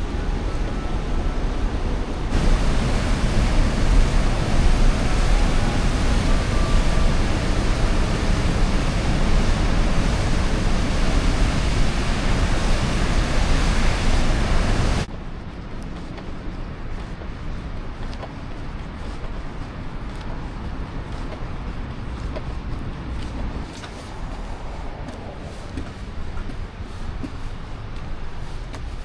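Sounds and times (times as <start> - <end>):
rushing water: 0.0 - 15.1, 22.6 - 29.0.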